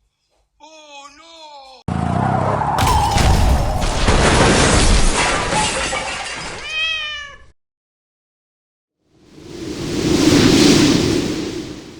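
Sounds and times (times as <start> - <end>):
loud crashing clatter: 2.8 - 6.7
cat meowing: 6.7 - 7.5.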